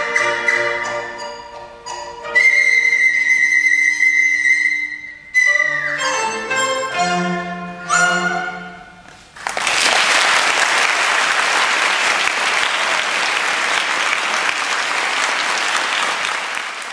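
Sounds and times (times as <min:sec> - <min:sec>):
orchestral accompaniment: 0:00.0 - 0:09.2
audience applause: 0:09.4 - 0:16.9.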